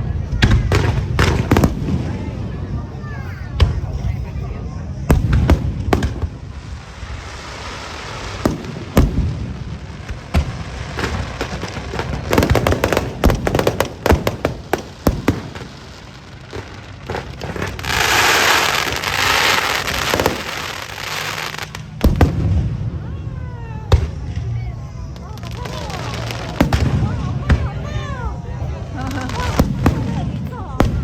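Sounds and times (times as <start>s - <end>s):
fireworks crackling: 0.0s - 31.0s
firework shells bursting: 8.0s - 22.7s.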